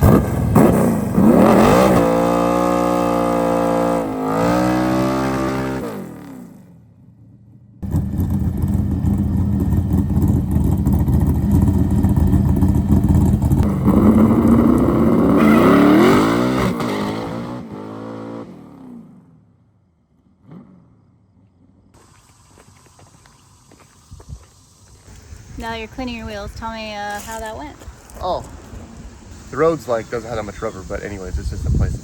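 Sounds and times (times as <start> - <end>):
drag car engine accelerating: 0.0 - 22.0.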